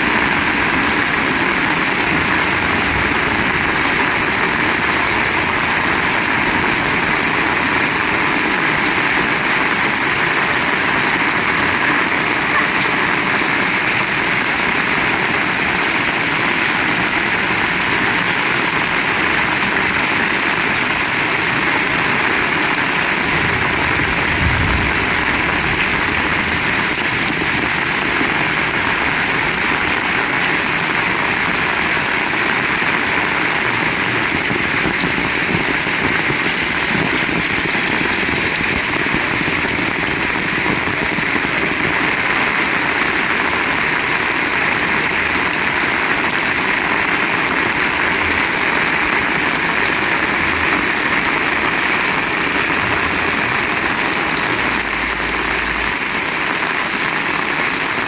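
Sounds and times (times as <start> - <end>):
heavy rain pouring: 0.0 - 58.0
low thump: 23.2 - 27.6.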